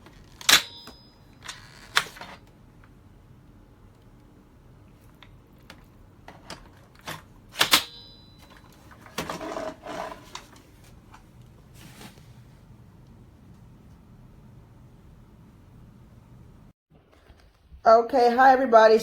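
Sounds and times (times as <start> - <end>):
scraping rustle: 9.0 - 11.0.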